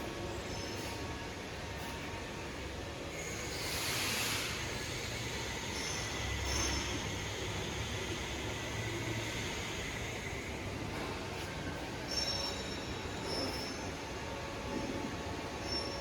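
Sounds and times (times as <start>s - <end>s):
thin high squeal: 12.1s - 14.0s.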